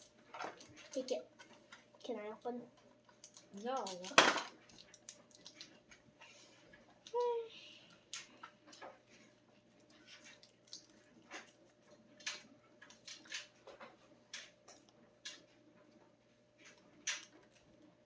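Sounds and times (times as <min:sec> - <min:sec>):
faint steady hum: 0:00.0 - 0:18.0
plastic capsules clicking and crinkling: 0:03.1 - 0:05.8.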